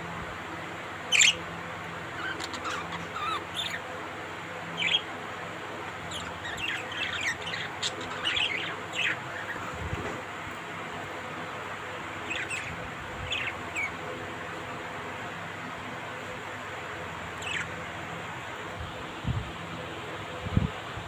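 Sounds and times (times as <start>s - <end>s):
parrots calling: 1.1s - 5.2s, 5.9s - 9.8s, 11.8s - 15.4s, 17.2s - 18.3s.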